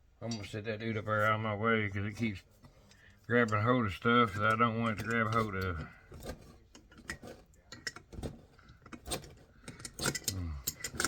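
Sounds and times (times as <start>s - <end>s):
metal tools clinking: 3.4s - 11.0s.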